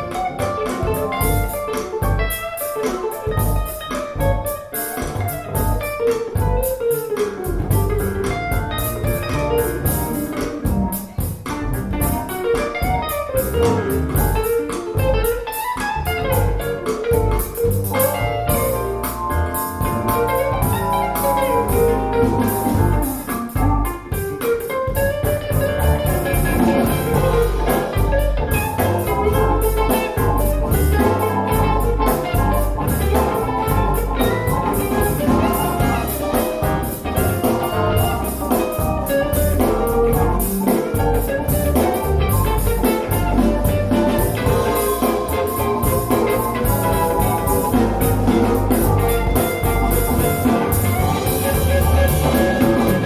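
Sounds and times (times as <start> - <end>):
music with drums and bass: 0.0 - 53.0.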